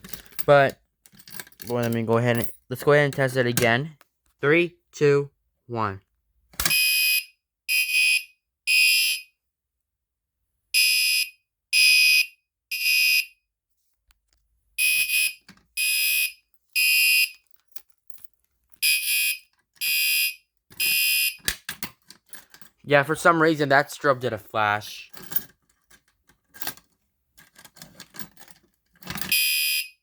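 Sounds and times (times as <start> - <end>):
fire alarm horn blasts: 6.7 - 9.3, 10.8 - 13.3, 14.8 - 17.3, 18.8 - 21.4, 29.3 - 30.0.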